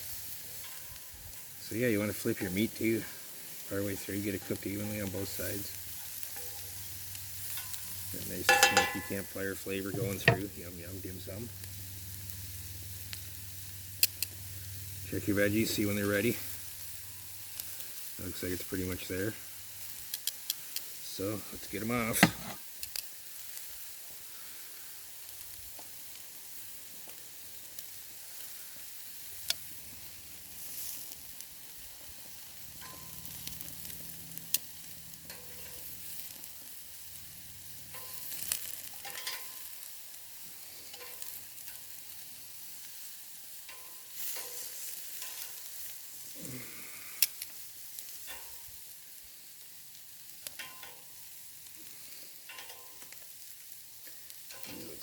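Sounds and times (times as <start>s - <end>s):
food sizzling on a grill: 0.0s - 55.0s
sharp clicks and pops: 9.9s - 10.6s, 22.1s - 23.1s.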